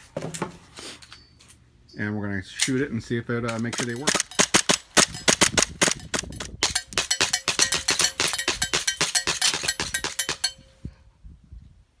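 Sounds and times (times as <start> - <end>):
faint steady ringing tone: 1.1 - 2.1, 6.8 - 11.0
airsoft pistol rapid shots: 3.7 - 10.6.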